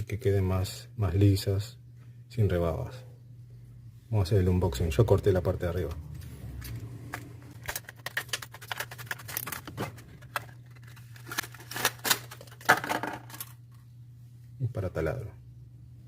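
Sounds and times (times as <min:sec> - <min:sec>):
steady low hum: 0:00.0 - 0:16.0
packaging rustling and clicking: 0:05.9 - 0:13.8.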